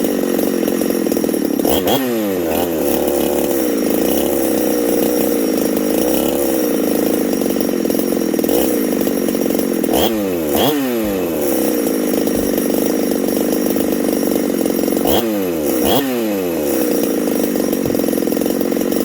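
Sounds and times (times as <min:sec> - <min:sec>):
chainsaw engine revving: 0:00.0 - 0:19.0.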